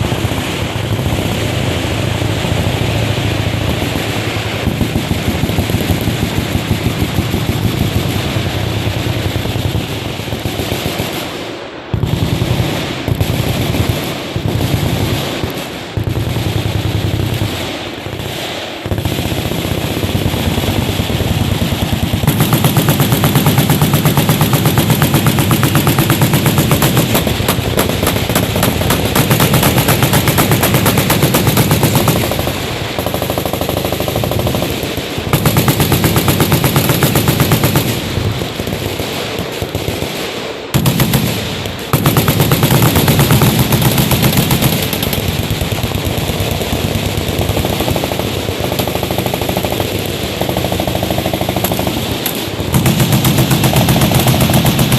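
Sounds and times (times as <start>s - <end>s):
machine guns firing: 0.0s - 54.9s.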